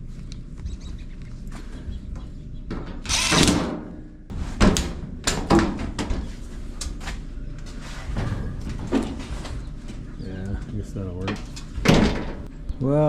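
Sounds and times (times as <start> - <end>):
loud rattling scrape: 3.1 - 3.6.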